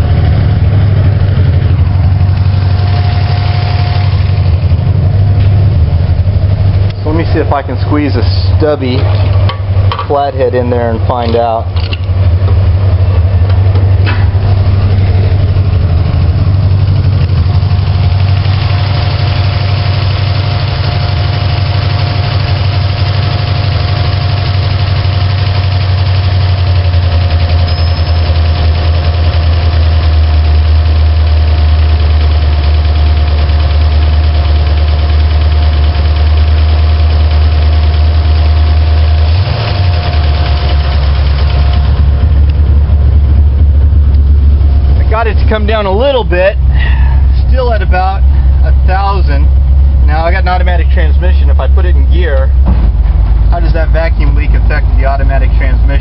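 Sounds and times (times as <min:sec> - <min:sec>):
car engine idling fast: 0:00.0 - 0:56.0.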